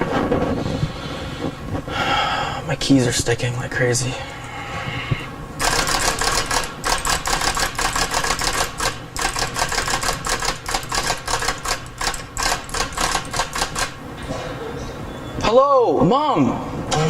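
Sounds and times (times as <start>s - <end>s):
typewriter keys clacking: 5.6s - 14.0s.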